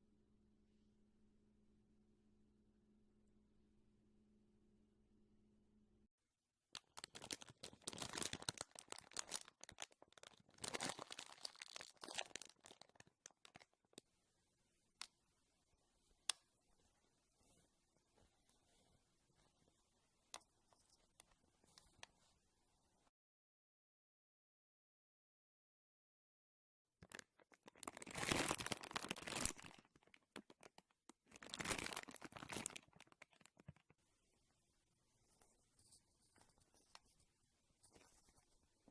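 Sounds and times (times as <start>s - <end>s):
slime crackling and popping: 6.8s - 14.0s, 27.0s - 33.9s.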